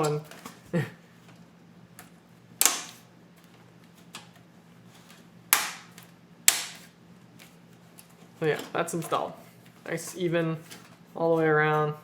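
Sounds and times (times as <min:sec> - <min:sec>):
sharp metallic snaps: 0:05.5 - 0:06.9.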